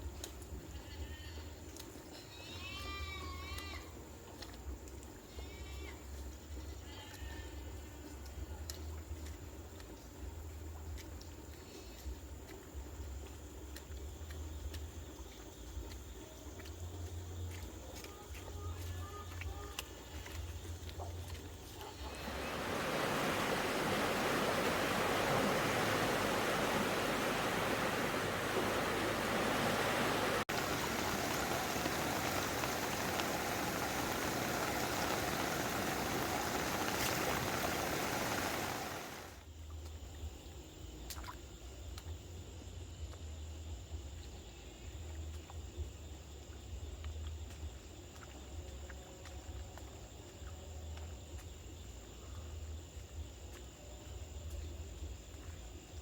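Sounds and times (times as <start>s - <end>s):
water rushing: 22.0s - 39.4s.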